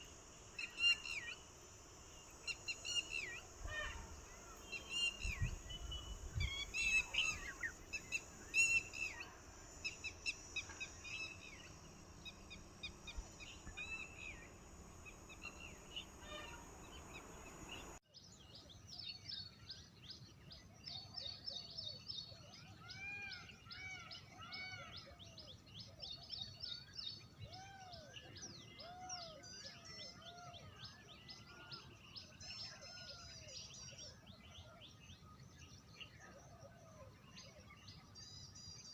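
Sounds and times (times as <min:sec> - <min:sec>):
birds' repeated arching calls: 0:00.0 - 0:18.0
wild birds chirping: 0:00.0 - 0:18.0.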